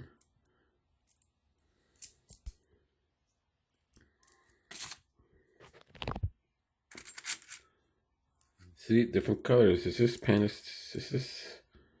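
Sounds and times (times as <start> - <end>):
metal fasteners clinking and rattling: 3.9 - 5.0, 6.9 - 7.7.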